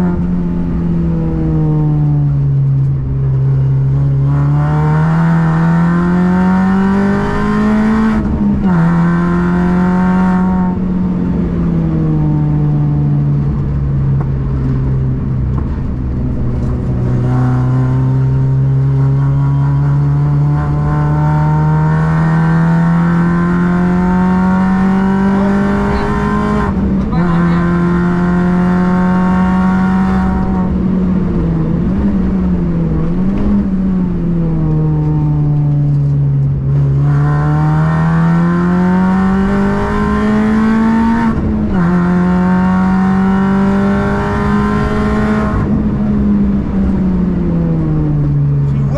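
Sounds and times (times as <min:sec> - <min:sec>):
race car engine revving: 0:03.8 - 0:12.6, 0:15.5 - 0:48.9.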